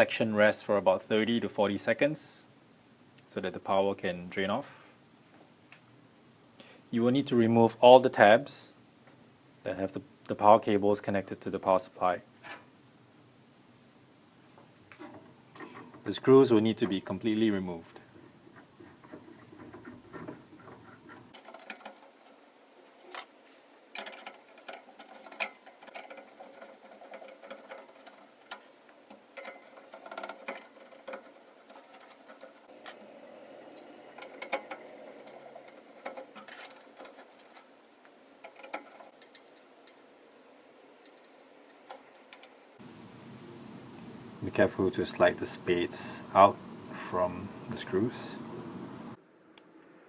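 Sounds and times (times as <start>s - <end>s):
screwdriver on metal terminals: 18.1s - 42.6s.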